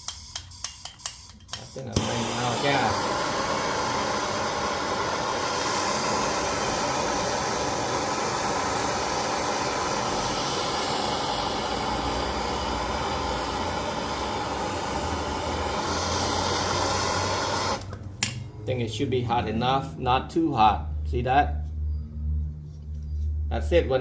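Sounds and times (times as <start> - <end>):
gas torch flame rushing: 1.5 - 18.4.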